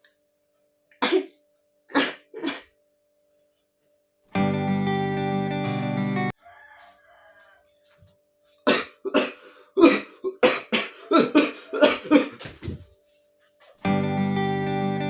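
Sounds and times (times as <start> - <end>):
person coughing: 1.0 - 2.7, 8.6 - 12.5.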